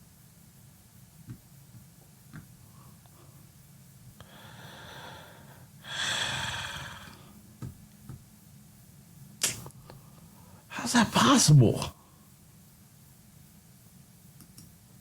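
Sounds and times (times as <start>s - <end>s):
man breathing: 4.2s - 7.4s.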